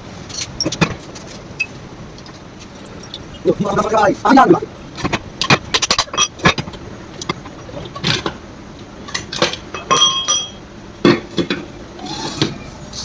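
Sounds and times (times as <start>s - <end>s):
metal tools clinking: 0.2s - 8.3s, 9.1s - 10.6s.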